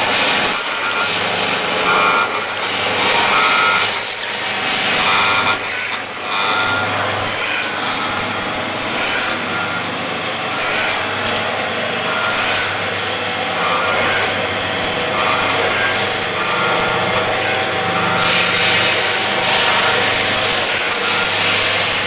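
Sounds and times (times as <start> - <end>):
packing machine motor hum: 0.0 - 22.0
repeating machine cycle: 0.0 - 22.0.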